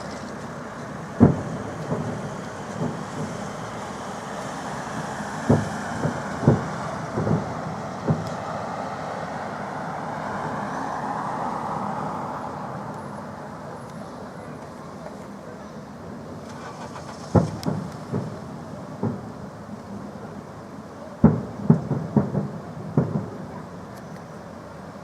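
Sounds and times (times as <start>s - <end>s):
fireworks booming: 0.0s - 10.2s, 16.4s - 24.4s
city noise: 0.0s - 25.0s.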